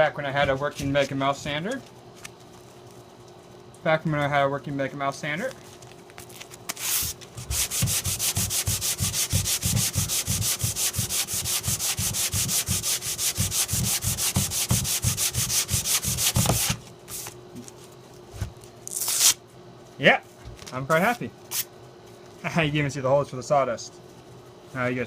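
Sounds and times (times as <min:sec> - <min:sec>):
sandpaper strokes: 0:06.8 - 0:17.3.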